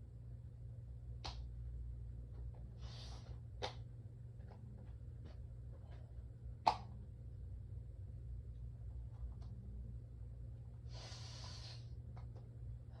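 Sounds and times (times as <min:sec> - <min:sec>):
faint low hum: 0:00.0 - 0:13.0
person sniffing: 0:10.9 - 0:11.9
sharp breath catch: 0:10.9 - 0:11.9.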